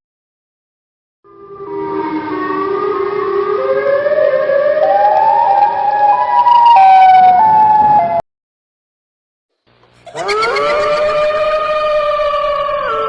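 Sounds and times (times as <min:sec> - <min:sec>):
eerie climbing wail: 0:01.3 - 0:07.5, 0:10.1 - 0:13.0.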